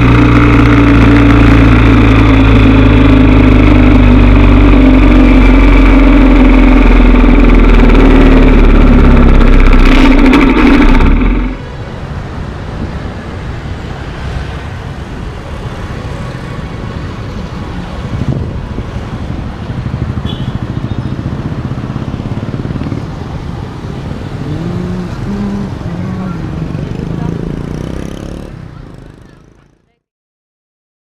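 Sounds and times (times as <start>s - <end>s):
road traffic rumble: 0.0s - 30.0s.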